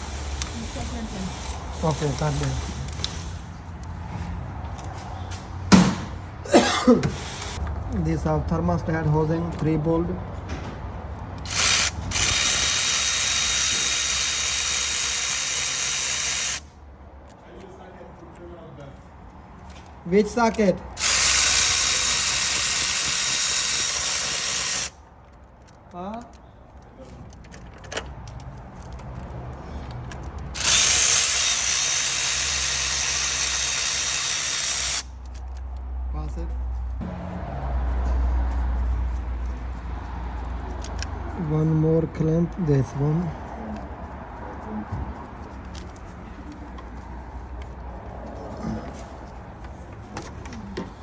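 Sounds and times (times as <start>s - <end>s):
power ratchet running: 11.4s - 16.7s, 21.0s - 25.0s, 30.2s - 35.4s.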